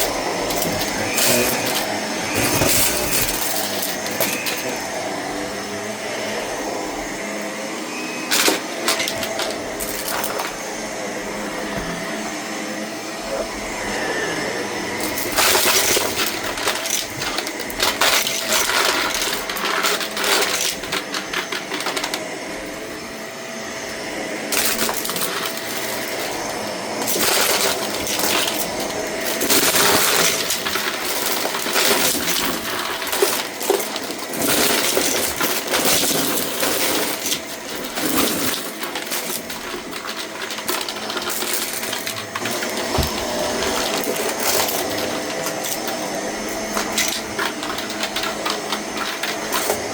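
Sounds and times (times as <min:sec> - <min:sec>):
debris clicking and rattling: 0:00.0 - 0:04.8, 0:08.3 - 0:10.6, 0:15.0 - 0:22.2, 0:24.5 - 0:49.9
vacuum cleaner running: 0:00.0 - 0:49.9.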